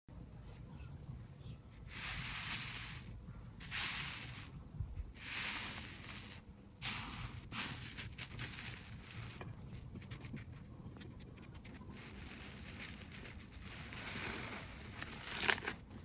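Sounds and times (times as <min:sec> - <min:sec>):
slime squishing and hissing: 0:02.0 - 0:04.5, 0:05.2 - 0:09.4.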